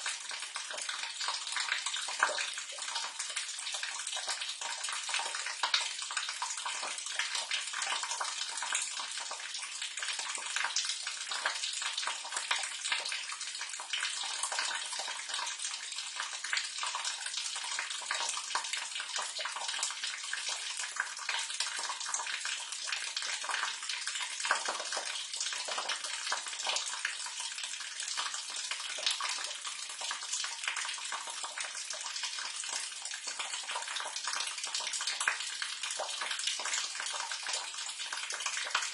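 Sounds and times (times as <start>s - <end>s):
water pouring into a drain: 0.0s - 38.9s.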